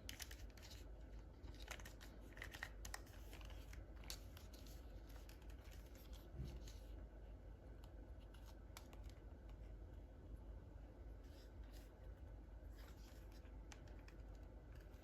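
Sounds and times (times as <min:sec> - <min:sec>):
toy packaging clicks and rustling: 0:00.0 - 0:06.8.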